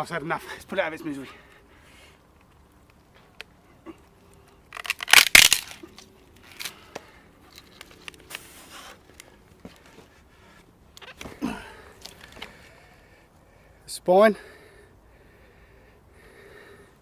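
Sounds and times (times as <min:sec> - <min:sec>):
wood cracking and splitting: 0:04.7 - 0:06.0.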